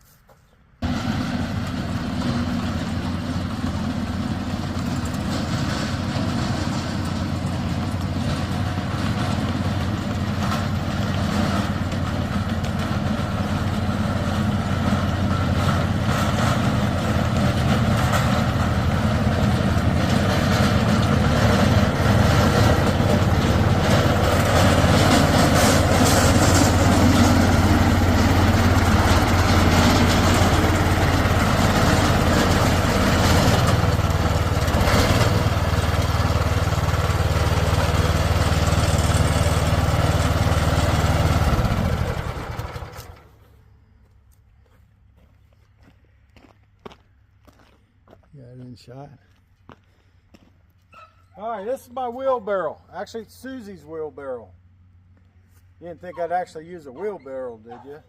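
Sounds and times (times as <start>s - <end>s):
small engine running: 0.8s - 43.5s.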